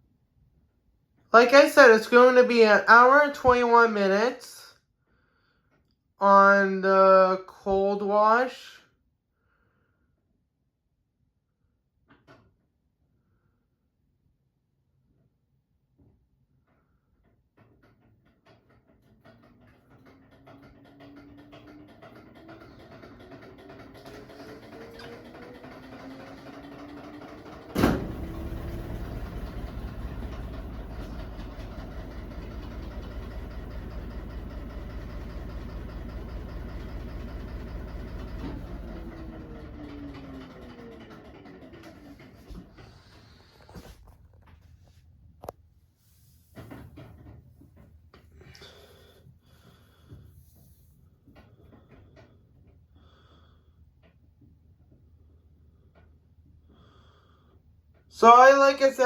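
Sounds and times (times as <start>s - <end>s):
washing machine running: 19.0s - 44.1s
washing machine click: 24.2s - 39.1s
low hum with rushing: 27.7s - 39.9s.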